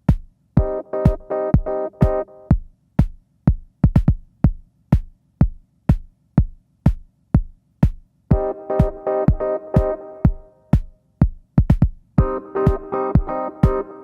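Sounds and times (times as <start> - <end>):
drum machine kick beat: 0.0 - 14.0
synth chord pattern: 0.6 - 2.5, 8.3 - 10.8, 12.2 - 14.0.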